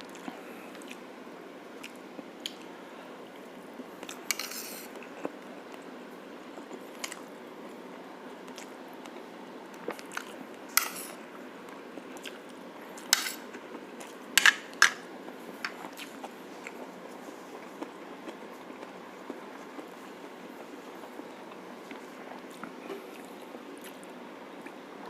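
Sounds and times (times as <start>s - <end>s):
steady background noise: 0.0s - 25.0s
utensils clinking on a plate: 13.1s - 13.4s.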